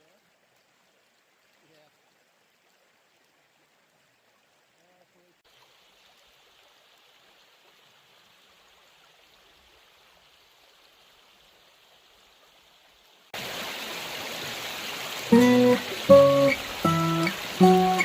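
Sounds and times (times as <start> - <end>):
river rapids rushing: 13.9 - 18.0
plucked acoustic guitar note: 15.3 - 18.0.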